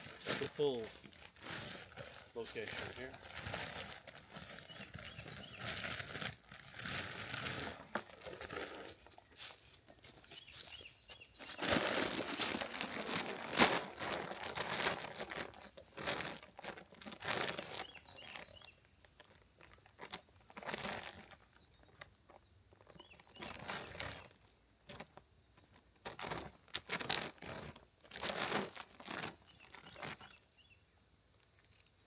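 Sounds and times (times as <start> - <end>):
rustling in dry leaves: 0.0 - 18.5.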